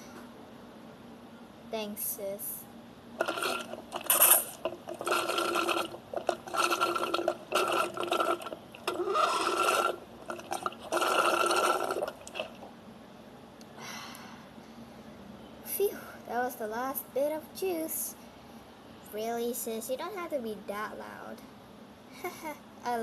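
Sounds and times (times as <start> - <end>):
loud slurping of a drink: 3.2 - 12.7.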